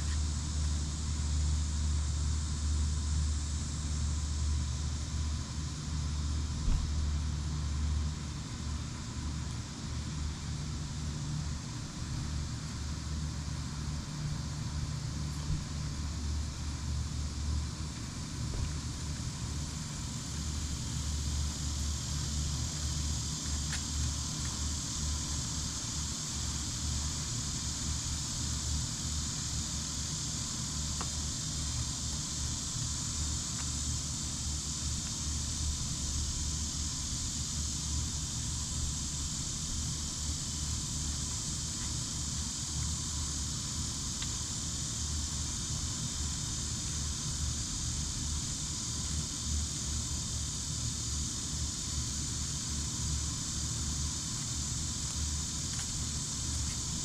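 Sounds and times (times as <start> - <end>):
high-pitched insect chorus: 11.6 - 57.0.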